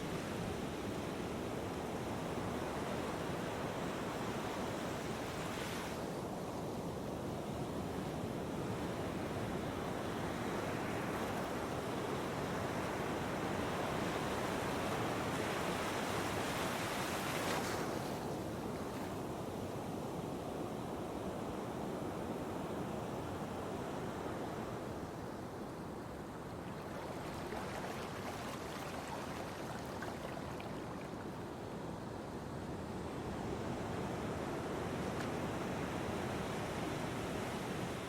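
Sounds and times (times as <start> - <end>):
ocean waves breaking: 26.2 - 31.4.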